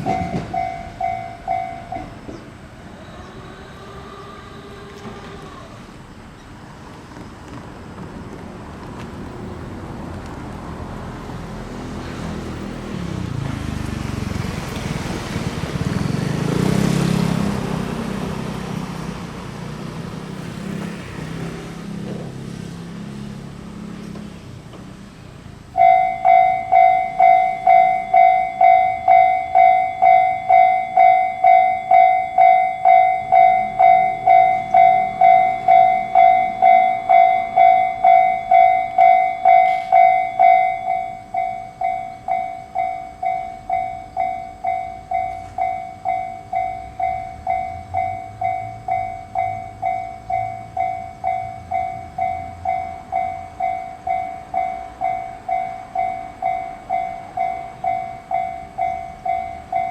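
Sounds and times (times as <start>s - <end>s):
level-crossing alarm two-tone ding: 0.0s - 2.2s, 25.8s - 59.9s.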